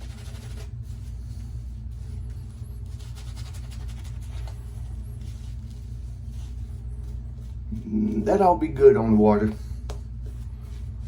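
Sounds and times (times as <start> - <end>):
shaving brush swishing: 0.0 - 8.6
low hum: 0.0 - 11.0.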